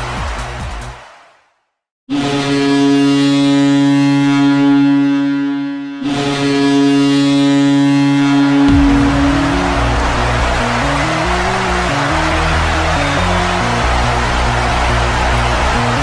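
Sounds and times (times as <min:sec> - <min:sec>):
arena goal horn blasts: 0:02.1 - 0:08.8
arena music: 0:08.7 - 0:14.8.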